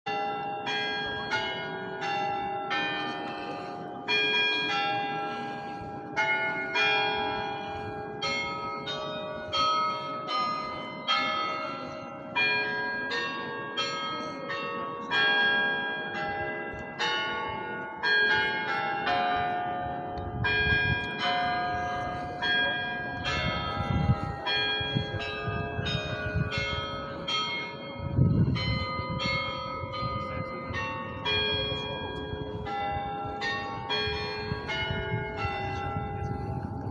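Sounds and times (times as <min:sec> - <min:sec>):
cathedral bells ringing: 0:00.1 - 0:36.9.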